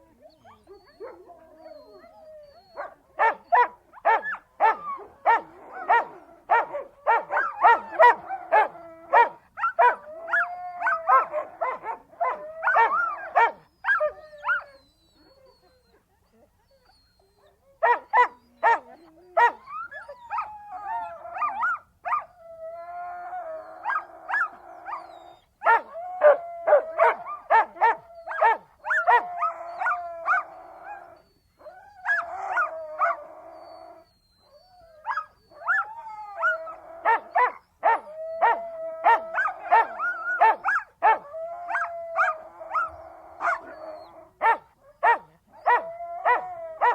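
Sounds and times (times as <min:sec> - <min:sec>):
dog howling: 0:00.0 - 0:15.8, 0:16.9 - 0:46.9
dog barking and yipping: 0:02.8 - 0:14.6, 0:25.6 - 0:29.2, 0:36.4 - 0:43.8, 0:44.4 - 0:46.9.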